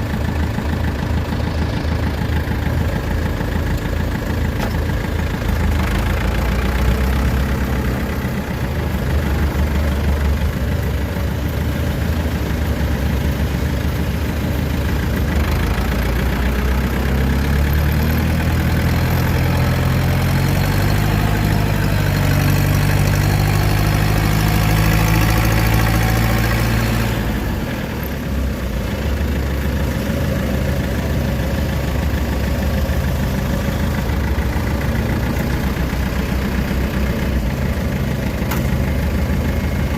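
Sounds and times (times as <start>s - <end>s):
diesel engine under load: 0.0s - 39.9s.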